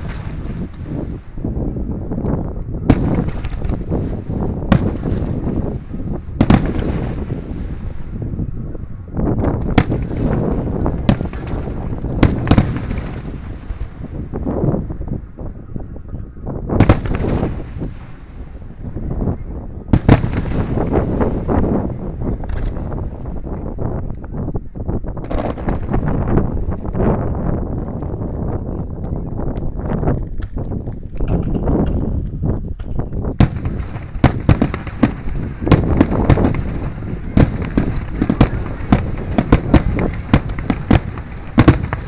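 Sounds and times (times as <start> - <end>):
crackling firework pops: 0.0 - 1.0, 2.2 - 5.7, 6.4 - 7.4, 9.4 - 10.5, 11.1 - 14.0, 16.8 - 17.8, 20.0 - 21.8, 22.4 - 23.0, 25.2 - 26.0, 32.8 - 42.0
firework shells bursting loudly: 0.0 - 1.4, 2.9 - 8.2, 9.6 - 14.2, 16.8 - 18.7, 19.9 - 22.8, 33.4 - 42.0
rolling rumble: 19.9 - 42.0.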